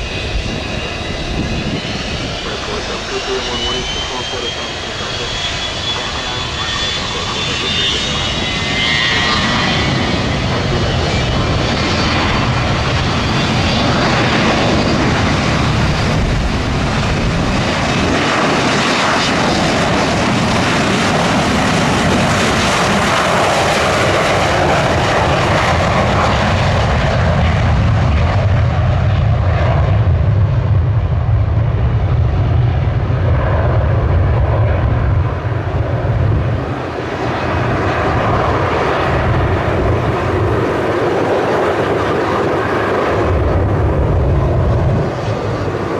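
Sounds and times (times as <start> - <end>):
jet engines running: 0.0 - 45.9.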